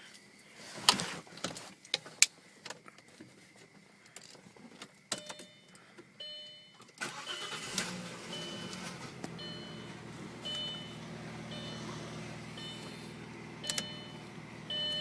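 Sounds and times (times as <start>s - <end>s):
ignition clicks: 6.8s - 15.0s
electronic chime tones: 9.4s - 11.9s, 12.6s - 13.0s, 13.6s - 15.0s.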